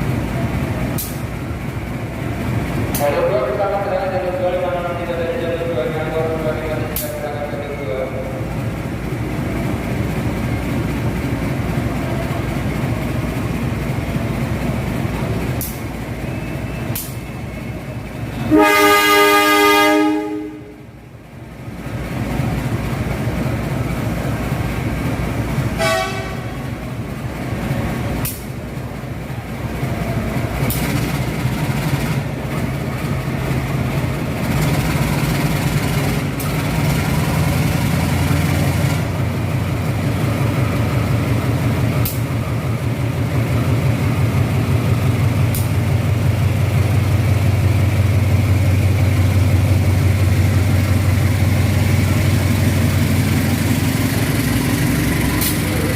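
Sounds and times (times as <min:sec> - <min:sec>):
train wheel clacks: 0:00.0 - 0:03.5, 0:06.0 - 0:17.3, 0:22.2 - 0:55.9
train rumbling: 0:00.0 - 0:55.9
train horn blasts: 0:18.3 - 0:20.9, 0:25.8 - 0:26.7.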